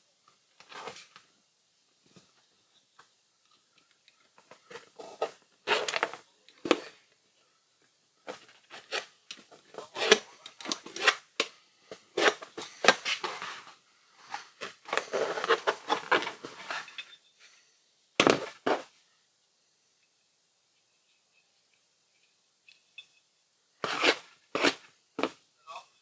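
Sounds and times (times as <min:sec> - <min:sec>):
scraping rustles: 0:11.9 - 0:17.0.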